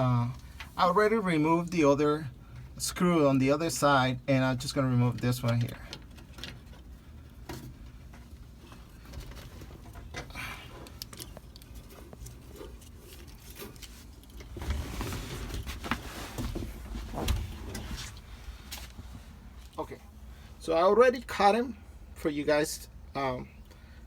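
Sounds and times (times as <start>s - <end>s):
parts being handled: 5.5s - 19.8s.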